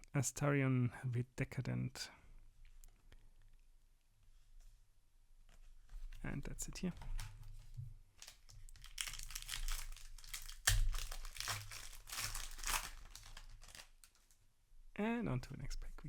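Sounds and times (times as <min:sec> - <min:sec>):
foil wrapper crinkling: 0:08.2 - 0:14.4.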